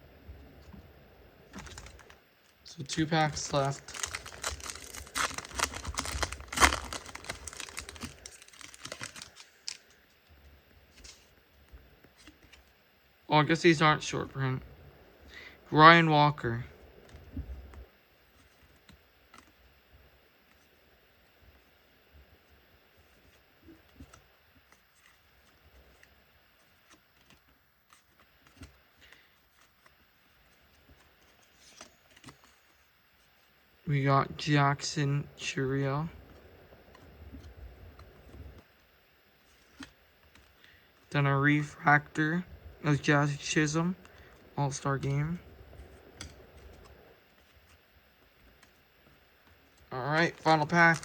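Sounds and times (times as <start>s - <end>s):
trading cards rustling and clicking: 1.5s - 2.2s, 2.9s - 10.0s, 42.9s - 51.0s
wrapper tearing and crinkling: 3.6s - 9.9s, 50.4s - 51.0s.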